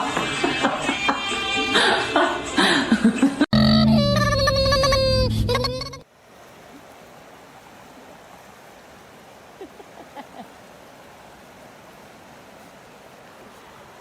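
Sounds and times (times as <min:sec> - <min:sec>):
music: 0:00.0 - 0:03.4.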